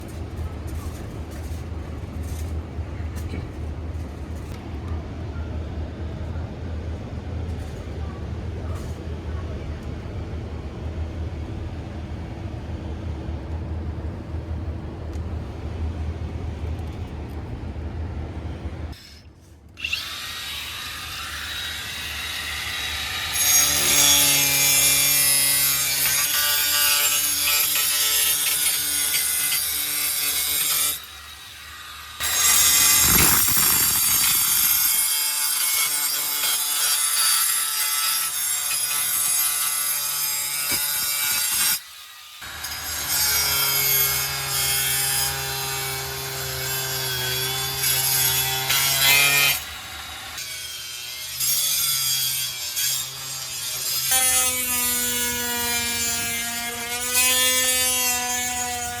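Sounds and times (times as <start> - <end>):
power tool whining and rasping: 19.8 - 59.0.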